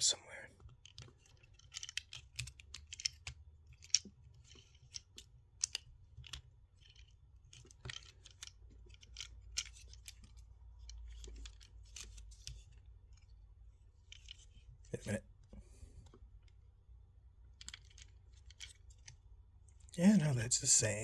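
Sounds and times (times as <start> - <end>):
plastic toy parts clicking: 0.6 - 13.3, 14.0 - 14.7, 17.4 - 19.2.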